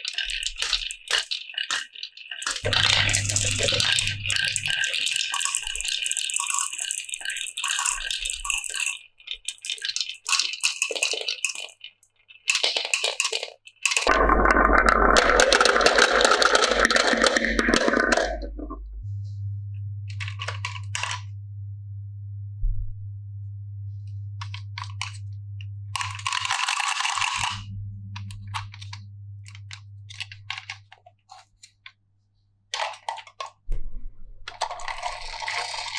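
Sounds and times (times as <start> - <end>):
marbles rattling down wooden run: 0.0 - 18.4, 26.0 - 27.6, 34.6 - 35.9
low hum: 2.7 - 4.8, 14.1 - 26.6, 27.2 - 30.7.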